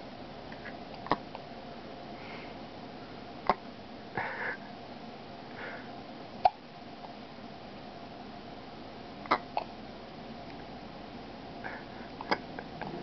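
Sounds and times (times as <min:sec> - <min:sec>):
baby hiccuping: 0:09.3 - 0:09.7.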